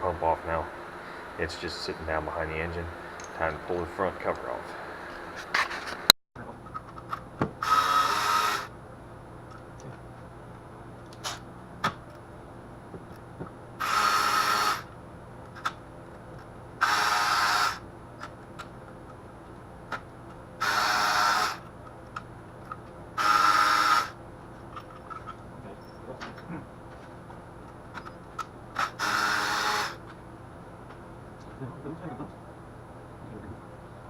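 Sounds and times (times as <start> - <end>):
power driver whining: 6.7 - 8.8, 12.9 - 15.8, 16.7 - 19.2, 19.9 - 26.5, 27.6 - 30.2.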